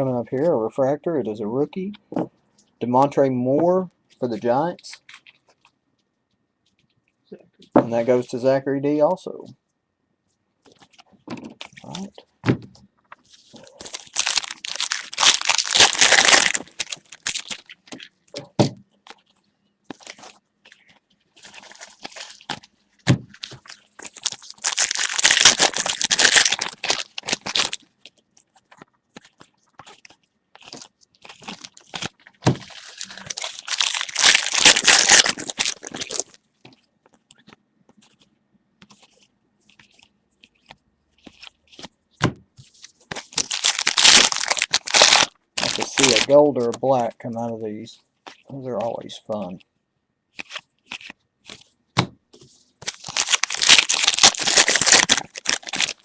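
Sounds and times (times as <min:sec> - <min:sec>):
foil packs tearing and crinkling: 0:13.4 - 0:17.8, 0:21.4 - 0:22.6, 0:23.4 - 0:27.9, 0:30.6 - 0:36.4, 0:43.1 - 0:46.6, 0:52.8 - 0:56.0.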